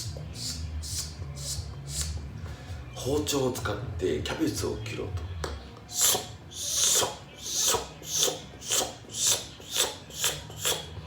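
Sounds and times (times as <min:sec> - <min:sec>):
man making rasping mouth sounds: 0:00.0 - 0:02.2, 0:05.9 - 0:11.0.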